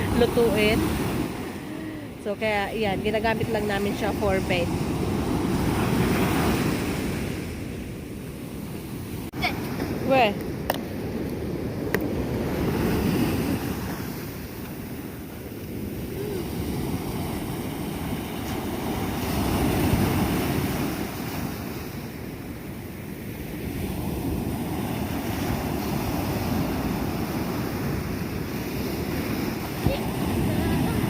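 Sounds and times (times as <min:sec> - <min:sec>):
ocean surf washing: 0:00.0 - 0:31.0.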